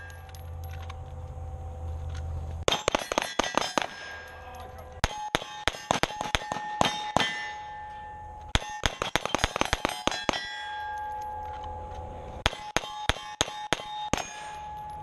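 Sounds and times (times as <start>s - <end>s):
pistol shots: 2.7s - 7.6s, 8.5s - 10.7s, 12.4s - 14.6s
steel targets clanging: 2.7s - 15.0s.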